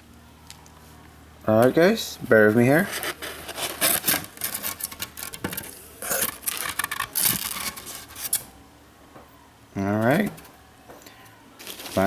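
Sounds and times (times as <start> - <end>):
cardboard scraping and rustling: 2.8 - 8.4.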